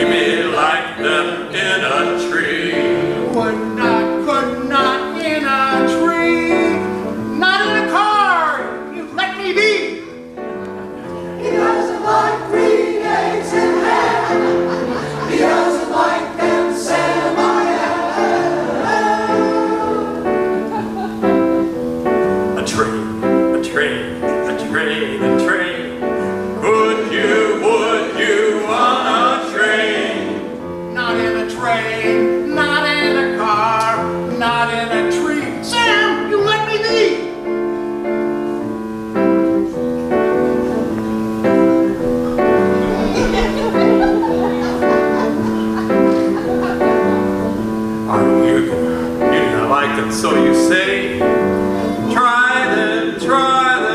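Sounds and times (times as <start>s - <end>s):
men's chorus singing: 0.0s - 5.1s, 11.4s - 21.1s, 26.6s - 30.6s, 49.3s - 53.9s
two men singing a duet: 0.0s - 7.0s, 26.6s - 36.3s, 48.1s - 53.9s
piano accompaniment: 0.0s - 53.9s.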